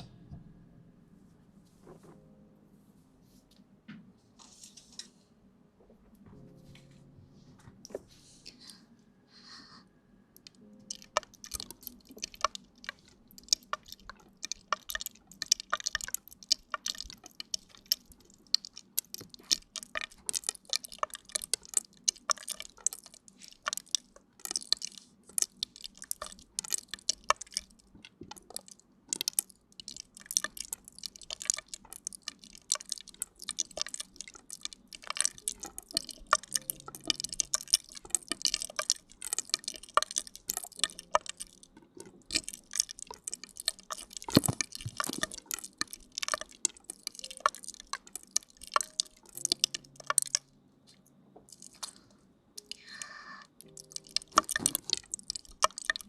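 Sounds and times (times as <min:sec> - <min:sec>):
wet crackling and squishing: 0:10.4 - 0:56.0.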